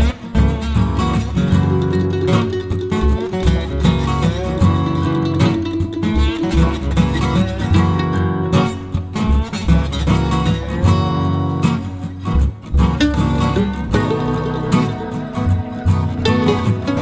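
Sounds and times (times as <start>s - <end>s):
acoustic guitar music with bass: 0.0s - 17.0s.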